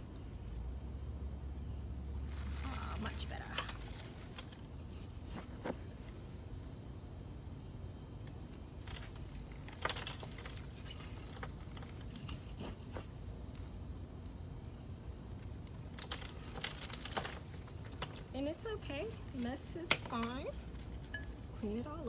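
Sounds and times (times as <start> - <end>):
steady background noise: 0.0 - 22.0
potting mix rustling: 2.2 - 6.8, 15.7 - 22.0.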